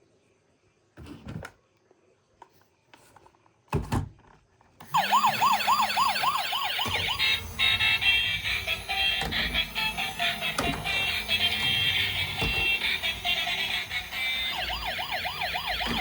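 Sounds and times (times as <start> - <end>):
toy siren yelping: 4.9 - 16.0.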